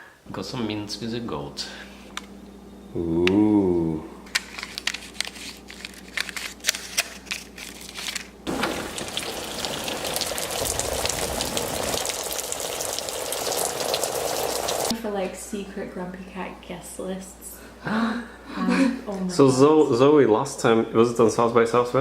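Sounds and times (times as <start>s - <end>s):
steady crackling hiss: 8.3s - 14.9s.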